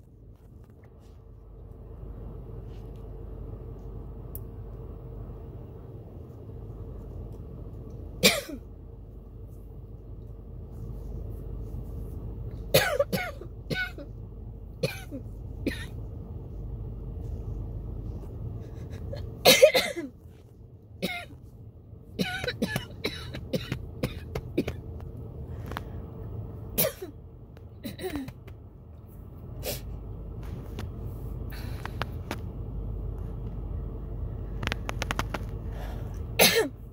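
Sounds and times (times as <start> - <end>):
low hum of car cabin: 0.0 - 36.9
person coughing: 8.2 - 8.6, 12.7 - 14.1, 14.8 - 15.9, 19.4 - 20.1, 21.0 - 21.4, 22.2 - 24.8, 26.8 - 27.2, 27.8 - 28.4, 36.4 - 36.8.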